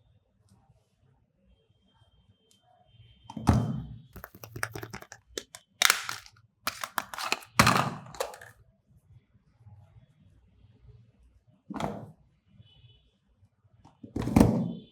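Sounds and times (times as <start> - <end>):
soap packaging knocks and rustles: 4.2 - 8.5.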